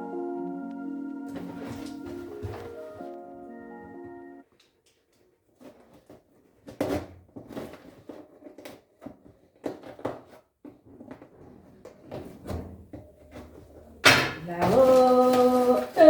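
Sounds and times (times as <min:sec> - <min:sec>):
objects knocking and clunking: 0:05.8 - 0:16.0.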